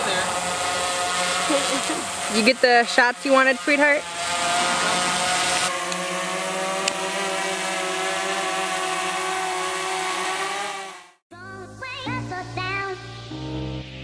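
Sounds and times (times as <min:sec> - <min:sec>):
rough low hiss: 0:00.0 - 0:11.0
motor buzzing: 0:00.0 - 0:11.2.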